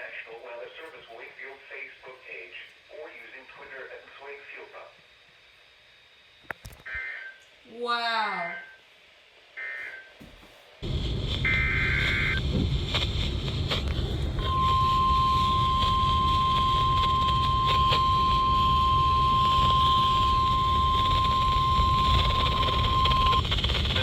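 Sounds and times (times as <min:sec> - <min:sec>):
radio hiss and hum: 0:00.0 - 0:05.7, 0:06.4 - 0:07.2, 0:09.6 - 0:24.0
steady warning beep: 0:11.4 - 0:12.4, 0:14.4 - 0:24.0.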